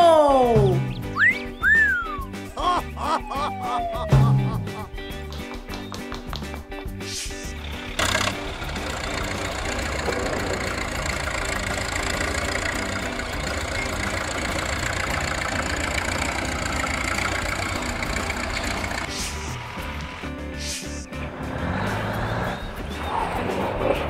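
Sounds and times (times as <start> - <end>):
vehicle engine running: 7.5 - 20.5.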